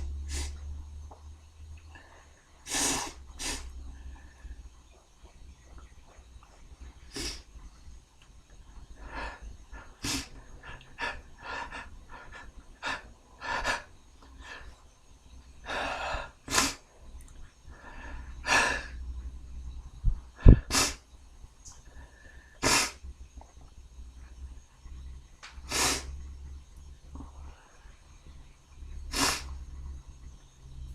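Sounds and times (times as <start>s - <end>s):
sharp in-breaths and sniffs: 0.0s - 0.6s, 2.7s - 3.8s, 7.1s - 7.5s, 9.0s - 14.7s, 15.7s - 16.8s, 20.4s - 21.0s, 22.6s - 23.0s, 25.6s - 26.2s, 29.1s - 29.6s.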